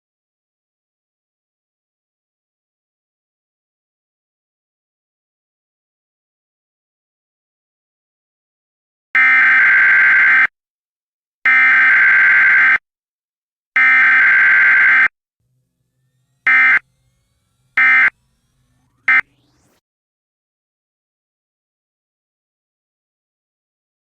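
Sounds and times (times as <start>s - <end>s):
harsh buzzing data tones: 13.8s - 19.8s.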